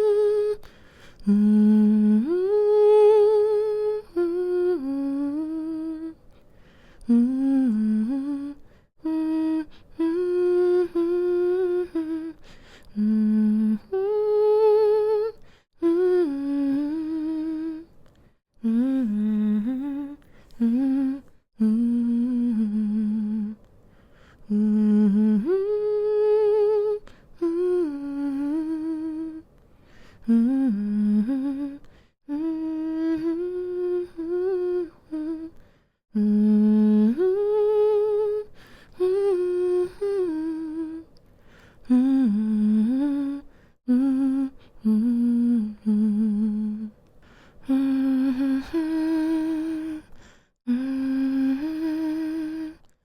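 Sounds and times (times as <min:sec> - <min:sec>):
woman humming a lullaby: 0:00.0 - 0:06.2, 0:30.3 - 0:35.6.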